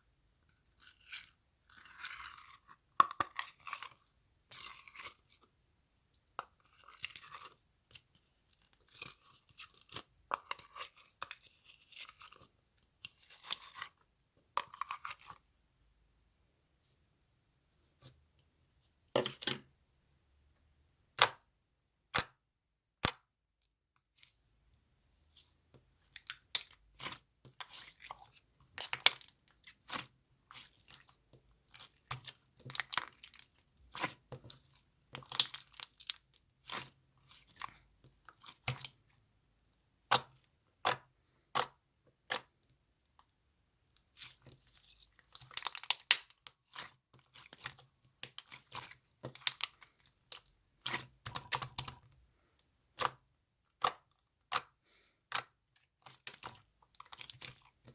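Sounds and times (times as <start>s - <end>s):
slime squished with sticky pops: 35.1s - 36.9s, 45.2s - 52.0s.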